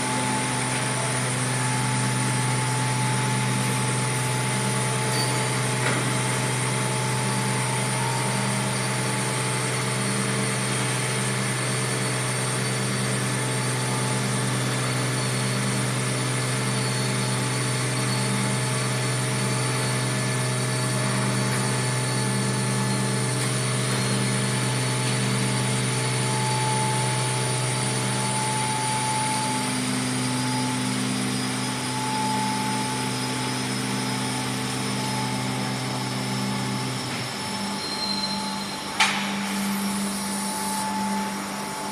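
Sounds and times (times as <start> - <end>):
machine drone: 0.0 - 41.9.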